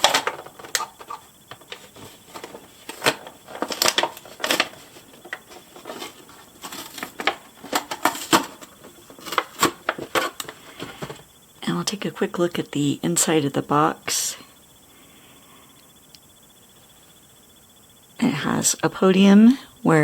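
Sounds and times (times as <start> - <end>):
toy packaging being opened: 0.0 - 4.8.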